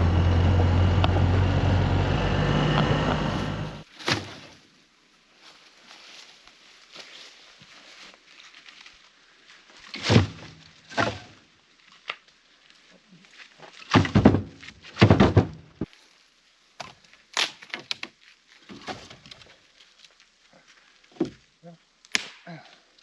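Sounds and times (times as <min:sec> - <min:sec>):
firewood thunking and knocking: 0:09.9 - 0:11.3, 0:13.7 - 0:15.9, 0:21.1 - 0:21.4.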